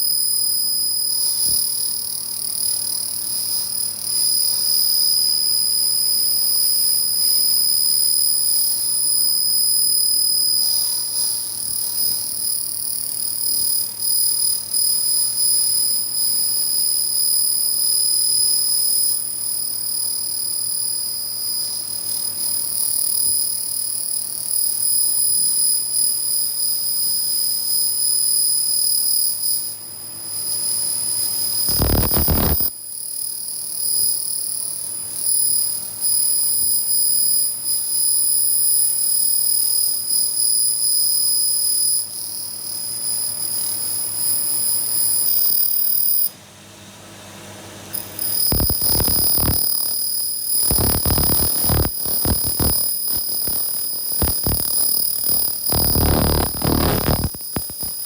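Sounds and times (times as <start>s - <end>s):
laser cleaner whine and hiss: 30.4s - 32.7s, 48.0s - 58.0s.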